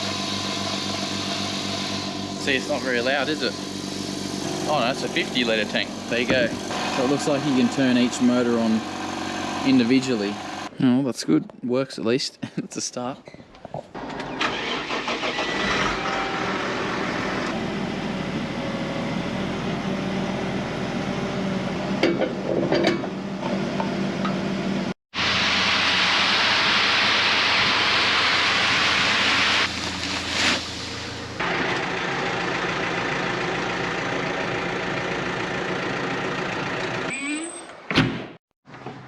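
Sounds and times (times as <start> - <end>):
loud steady air hiss: 0.0 - 8.6, 25.2 - 29.8
air compressor humming: 0.0 - 10.7.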